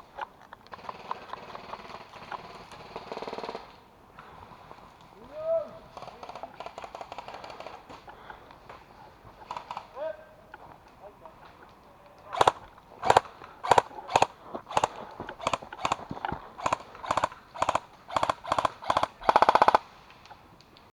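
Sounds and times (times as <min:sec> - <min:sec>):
airsoft guns firing: 0:06.0 - 0:07.9, 0:09.4 - 0:10.0, 0:12.3 - 0:19.9.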